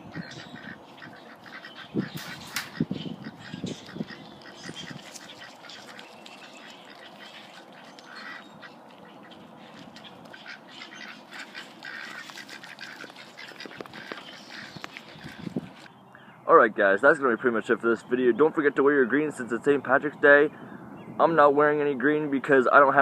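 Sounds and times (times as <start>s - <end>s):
ducks quacking: 0.0s - 15.9s.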